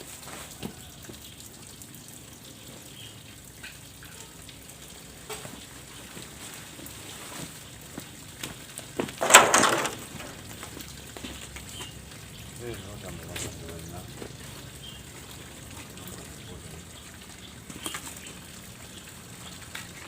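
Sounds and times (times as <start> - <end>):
small knocks: 9.0 - 10.4
water spattering from pipe joint: 9.0 - 10.9.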